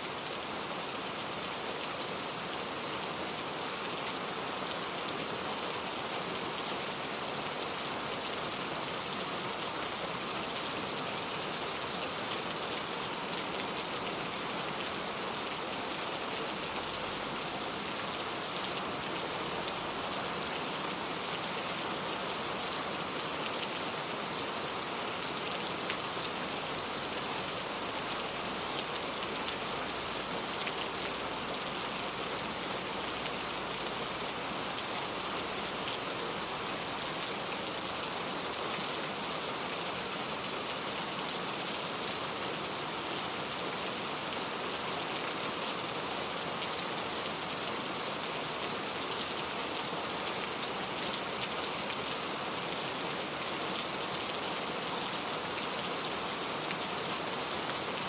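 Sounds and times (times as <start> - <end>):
rain pattering on a surface: 0.1 - 58.0.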